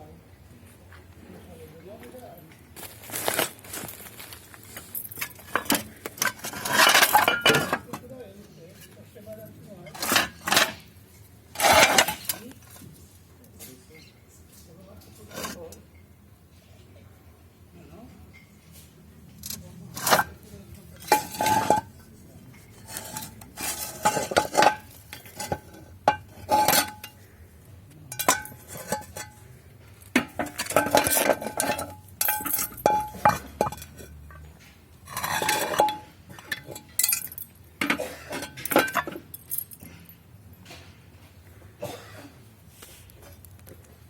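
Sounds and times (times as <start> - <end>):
metal pieces clanking: 5.0 - 8.0, 9.9 - 10.8, 11.6 - 12.4, 21.0 - 21.9, 22.8 - 27.2, 28.1 - 29.4, 30.1 - 34.4, 35.1 - 40.1.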